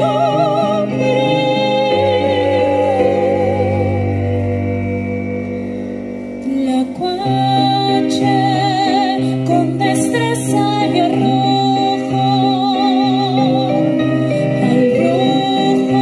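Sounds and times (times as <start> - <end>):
women singing: 0.0 - 4.4, 6.4 - 16.0
piano chords: 0.0 - 16.0
violin melody with vibrato: 0.0 - 16.0.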